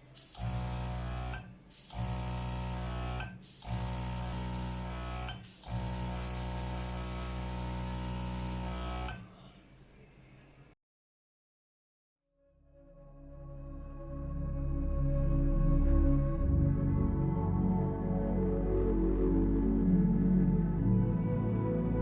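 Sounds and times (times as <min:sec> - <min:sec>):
air hissing: 0:00.0 - 0:09.2
airbrush compressor humming: 0:00.0 - 0:09.2.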